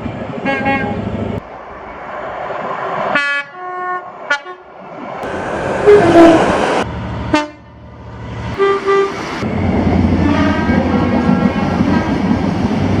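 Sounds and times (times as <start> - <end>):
train rumbling: 0.0 - 13.0
train horn: 3.1 - 4.7, 5.8 - 6.5, 7.3 - 7.8, 8.6 - 9.2, 10.2 - 12.2.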